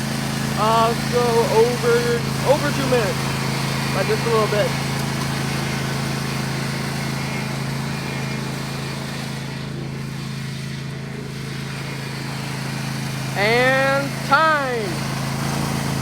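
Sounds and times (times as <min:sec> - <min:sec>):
lawn mower engine running: 0:00.0 - 0:16.0.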